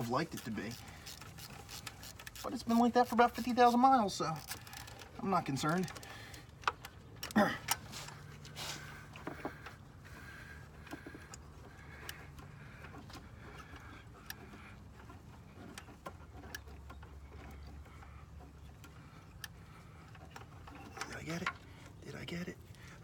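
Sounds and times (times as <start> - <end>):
hand tools clicking and clinking: 0.0 - 8.5.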